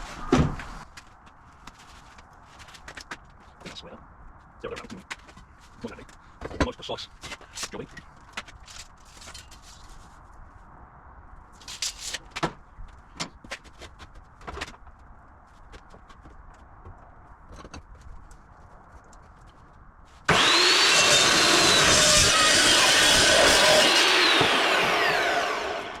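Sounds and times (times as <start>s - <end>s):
metal saw whining: 20.3s - 26.0s.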